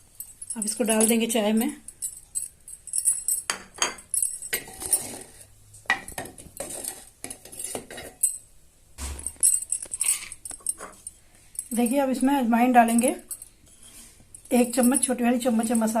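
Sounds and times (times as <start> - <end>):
spoon clinking and scraping pot: 3.1 - 11.2, 13.3 - 16.0.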